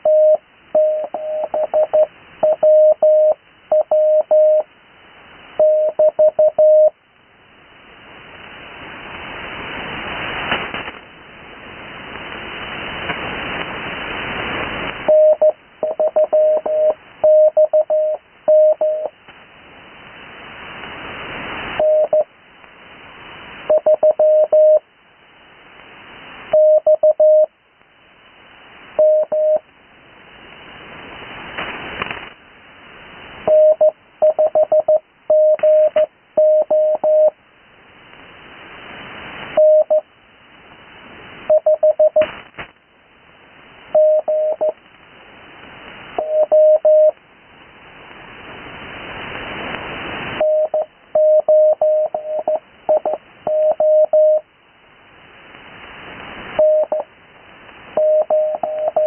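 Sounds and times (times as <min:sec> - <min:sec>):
morse code tone: 0:00.0 - 0:04.7, 0:05.6 - 0:06.9, 0:15.1 - 0:19.1, 0:21.8 - 0:22.2, 0:23.7 - 0:24.8, 0:26.6 - 0:27.5, 0:29.0 - 0:29.6, 0:33.5 - 0:37.3, 0:39.6 - 0:40.0, 0:41.5 - 0:42.3, 0:44.0 - 0:44.8, 0:46.2 - 0:47.1, 0:50.4 - 0:54.4, 0:56.6 - 0:57.1, 0:58.0 - 0:59.0
radio band hiss: 0:08.0 - 0:24.8, 0:30.3 - 0:33.5, 0:40.5 - 0:43.9, 0:47.5 - 0:50.9.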